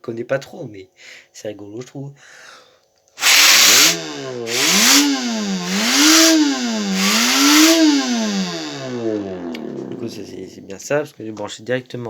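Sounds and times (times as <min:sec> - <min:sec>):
fan whine rising and falling: 0:03.2 - 0:10.7.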